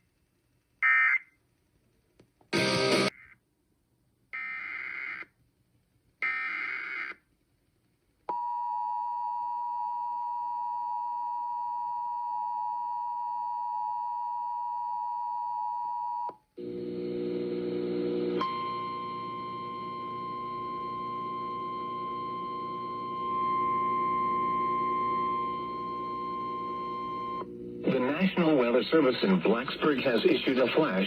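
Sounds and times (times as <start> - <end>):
steady higher tone: 18.4 - 28.6.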